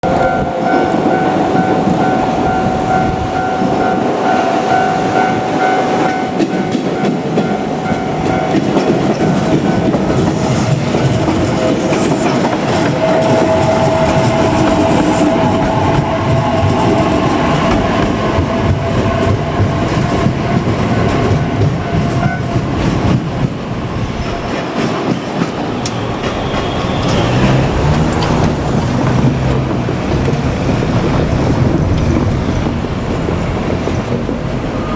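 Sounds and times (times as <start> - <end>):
wheels clattering over rail joints: 24.2 - 34.9.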